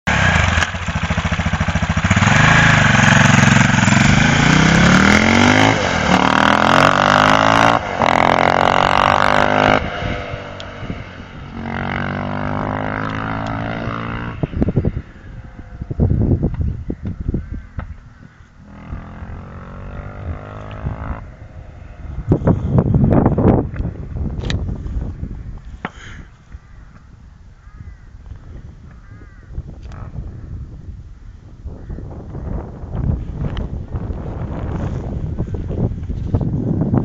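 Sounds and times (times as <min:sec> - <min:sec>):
motorcycle engine revving: 0:00.0 - 0:25.1.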